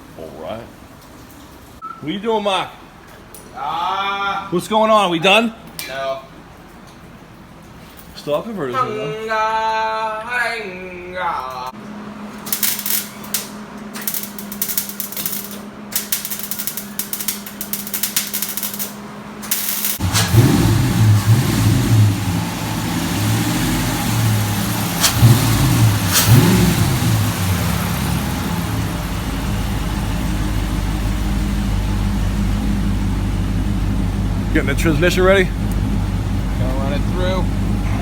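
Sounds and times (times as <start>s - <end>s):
truck engine starting and revving: 19.3s - 38.0s
engine idling: 20.0s - 38.0s.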